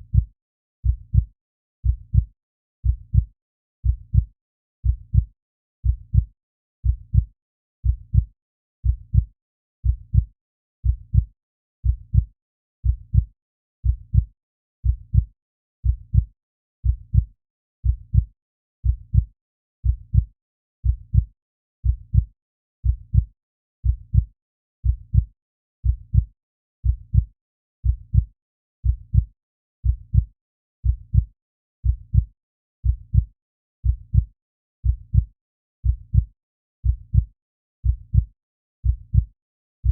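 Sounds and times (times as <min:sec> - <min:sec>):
heartbeat thumps: 0:39.1 - 0:39.3.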